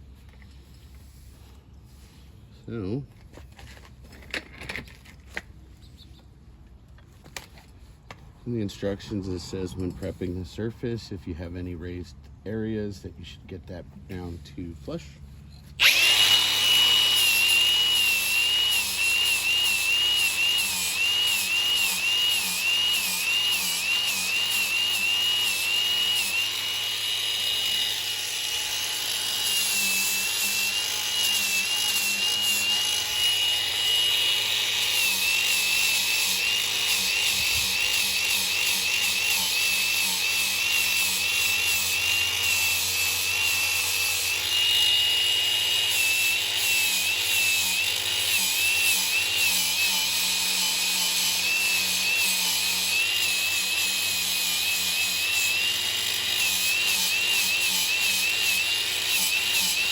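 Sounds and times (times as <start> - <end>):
angle grinder grinding rubber: 15.5 - 59.9.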